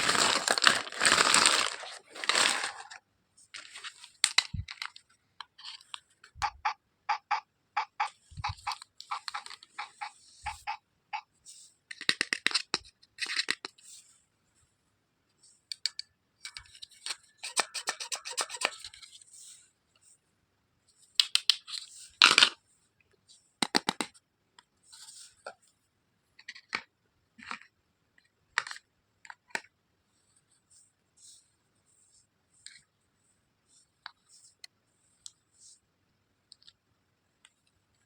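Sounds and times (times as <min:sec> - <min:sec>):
packaging crinkling: 0:00.0 - 0:03.0
plastic toy pieces clicking: 0:17.4 - 0:19.0.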